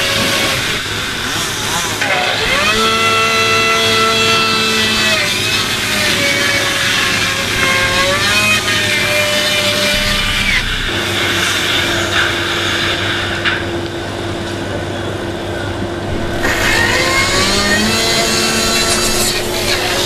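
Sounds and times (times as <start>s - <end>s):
steady hum: 5.4s - 20.0s
vehicle engine noise: 8.7s - 20.0s
layered noise sound effects: 9.5s - 13.7s, 16.0s - 20.0s.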